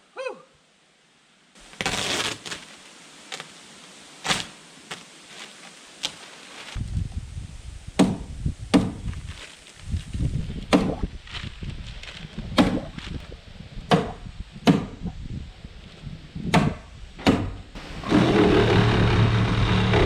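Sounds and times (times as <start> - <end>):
blows knocking on wood: 16.5 - 20.0.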